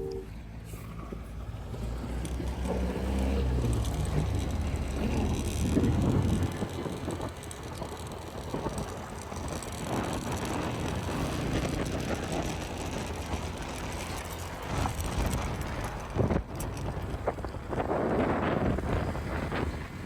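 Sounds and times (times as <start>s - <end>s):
boat engine humming: 0.0s - 20.0s.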